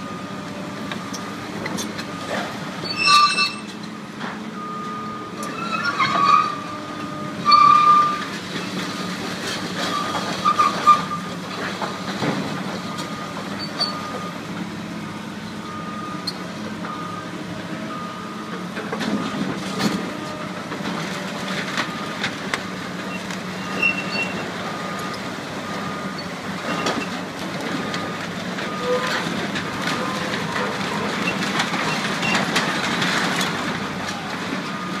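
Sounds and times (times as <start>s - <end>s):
heavy machinery engine rumble: 0.0s - 35.0s
high continuous squeal: 2.8s - 3.8s.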